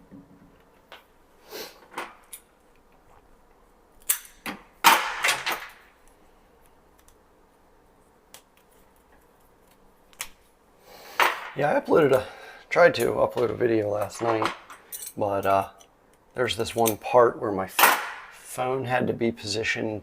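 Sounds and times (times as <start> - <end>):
cable wires clicking and snapping: 6.9 - 7.2, 8.3 - 10.5.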